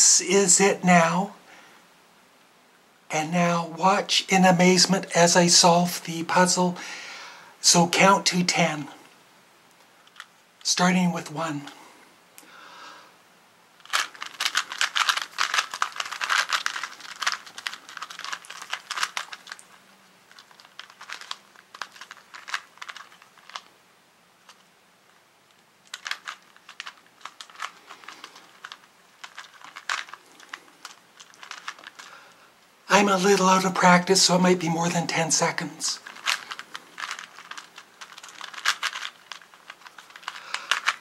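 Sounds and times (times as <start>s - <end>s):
puzzle cube clicking as twisted: 13.8s - 23.7s, 25.8s - 32.1s, 36.0s - 41.0s.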